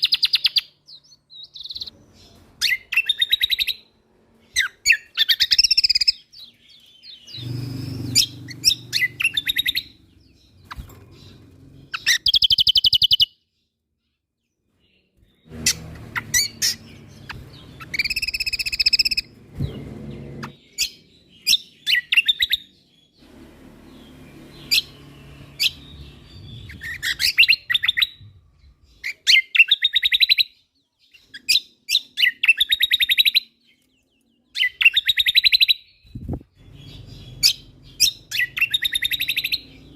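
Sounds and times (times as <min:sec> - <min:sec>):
songbird trills and chirps: 0:00.0 - 0:23.2, 0:23.9 - 0:39.9
low rumble: 0:19.2 - 0:20.6.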